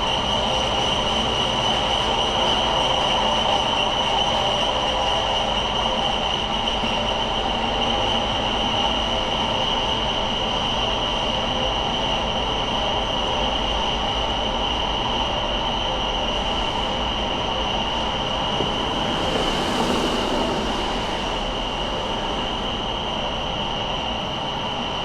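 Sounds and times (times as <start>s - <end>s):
street background noise: 0.0s - 25.0s
hiss: 16.2s - 25.0s.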